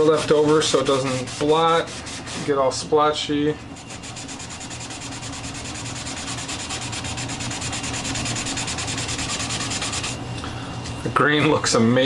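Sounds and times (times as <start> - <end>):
rag rubbing on wood board: 0.0 - 2.7, 3.8 - 10.2.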